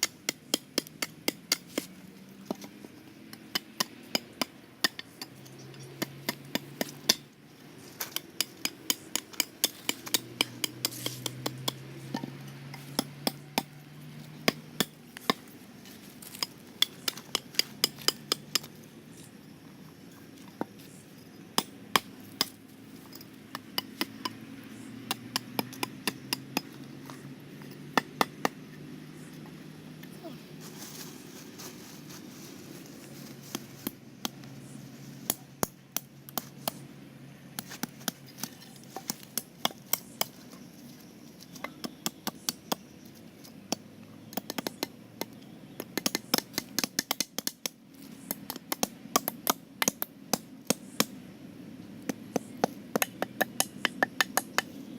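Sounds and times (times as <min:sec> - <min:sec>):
small hammer strikes: 0:08.0 - 0:13.7, 0:16.4 - 0:18.8, 0:25.0 - 0:26.8, 0:52.1 - 0:54.8.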